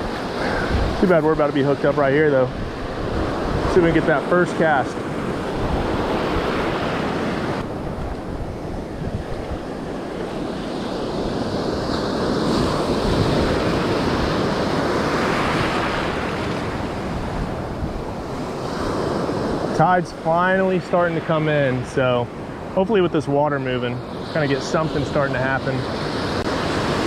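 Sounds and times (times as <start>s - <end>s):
wind buffeting microphone: 0.0s - 23.2s
surf washing onto beach: 0.0s - 27.0s.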